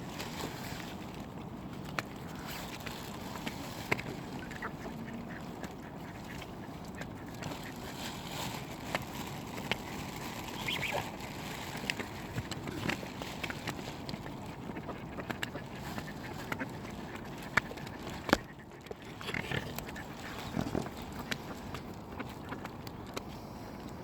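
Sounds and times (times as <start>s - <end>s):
ducks quacking: 4.1s - 8.0s, 10.3s - 13.0s.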